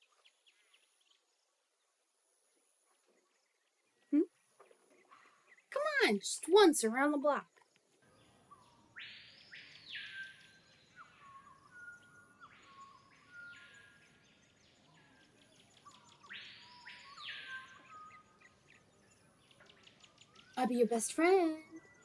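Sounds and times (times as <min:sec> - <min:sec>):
faint chirping calls: 0:08.4 - 0:22.0.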